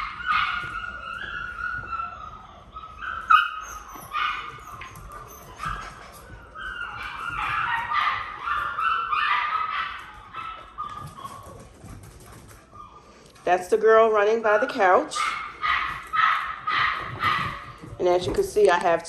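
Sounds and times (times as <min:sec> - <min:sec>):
puppies yipping and whimpering: 0:00.0 - 0:11.8, 0:12.4 - 0:13.2.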